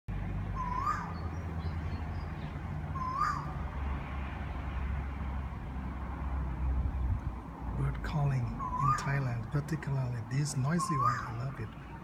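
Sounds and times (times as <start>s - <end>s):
loud bird call sweeping up: 0.5s - 3.6s.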